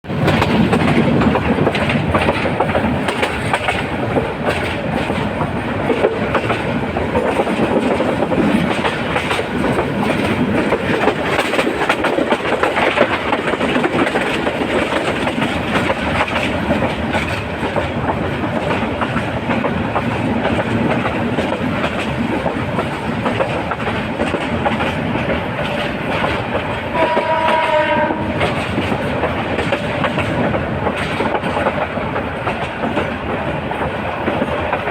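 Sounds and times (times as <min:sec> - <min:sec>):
train wheels clickety-clack: 0:00.1 - 0:34.9
train horn: 0:26.9 - 0:28.6.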